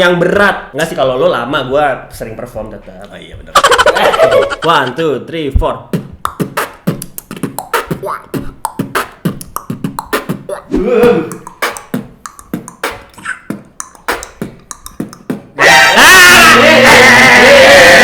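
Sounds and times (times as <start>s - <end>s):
human beatboxing: 3.5s - 16.3s
pitched vocal sound effect: 5.9s - 18.0s.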